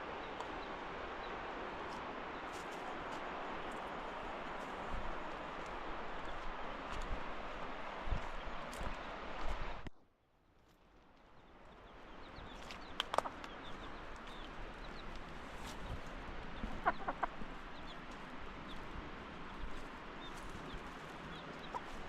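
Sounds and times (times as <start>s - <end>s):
chickens clucking: 12.5s - 15.9s, 16.5s - 18.9s, 19.5s - 22.0s.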